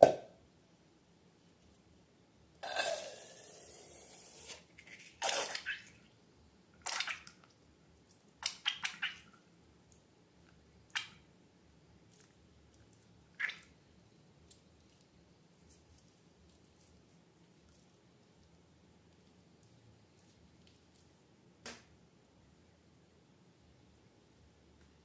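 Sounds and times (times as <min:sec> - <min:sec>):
slime squelching and popping: 0:06.8 - 0:10.0.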